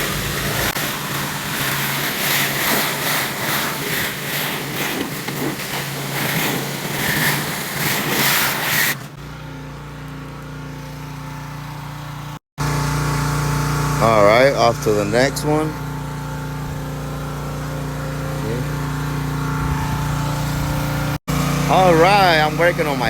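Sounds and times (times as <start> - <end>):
pressure washer spray hissing: 0.0 - 9.1, 12.6 - 23.0
pressure washer engine hum: 0.0 - 23.0.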